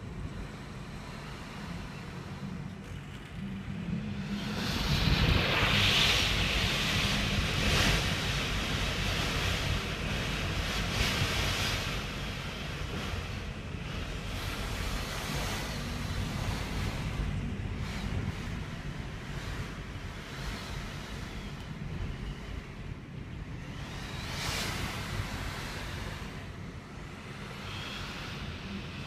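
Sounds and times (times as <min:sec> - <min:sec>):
strong wind gusts: 0:00.0 - 0:29.0
wind buffeting microphone: 0:00.0 - 0:29.0
rain: 0:04.1 - 0:22.6.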